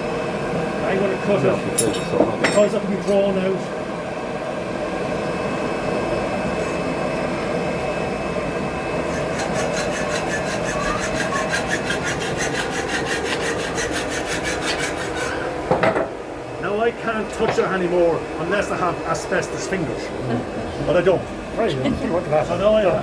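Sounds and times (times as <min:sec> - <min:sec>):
rasping strokes on hot iron: 0:08.8 - 0:15.6.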